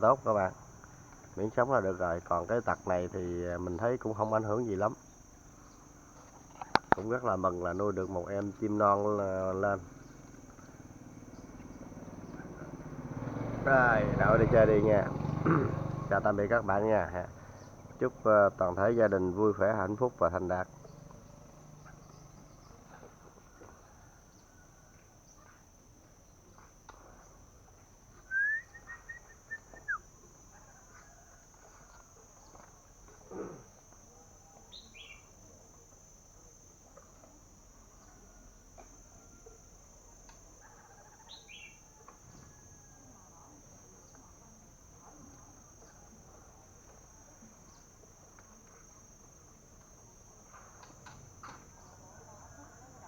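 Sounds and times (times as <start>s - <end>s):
crickets droning: 0.0s - 53.0s
bird calls: 28.1s - 32.7s, 34.7s - 35.3s, 40.6s - 42.7s.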